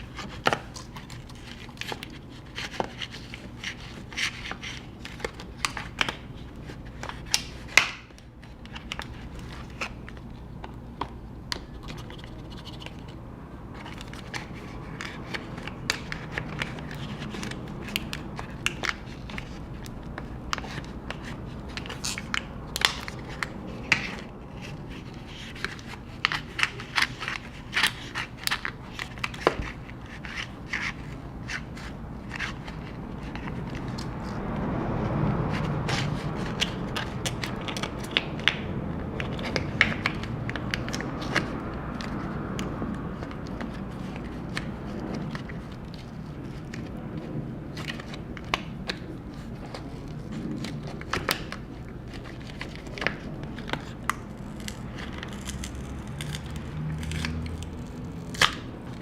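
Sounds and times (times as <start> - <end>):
plastic tool scraping: 35.4 - 59.0
adhesive cracking: 50.3 - 59.0.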